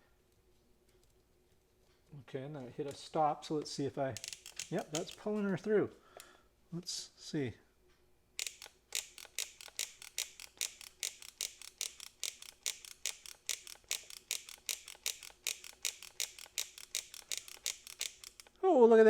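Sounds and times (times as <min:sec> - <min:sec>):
solder feeder clicking: 0:04.2 - 0:05.5, 0:08.4 - 0:18.6.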